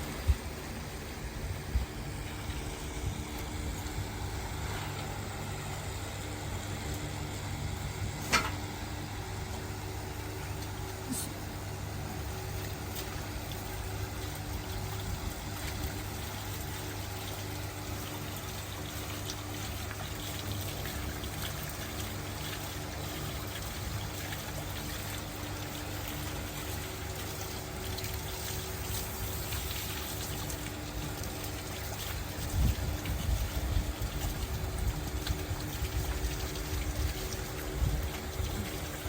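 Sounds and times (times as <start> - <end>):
low motor hum: 0.0 - 39.0
water pouring and splashing: 0.0 - 39.0.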